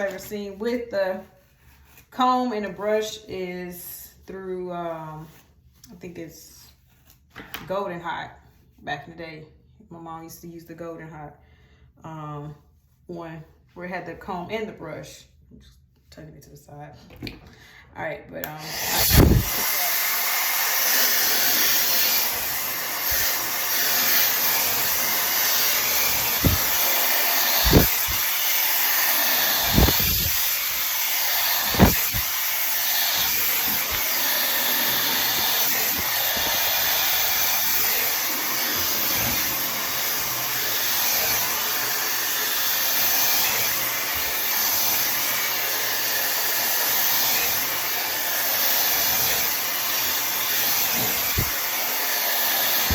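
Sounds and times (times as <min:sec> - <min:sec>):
hair dryer blowing: 0:18.4 - 0:52.9
low thumps: 0:26.4 - 0:26.8.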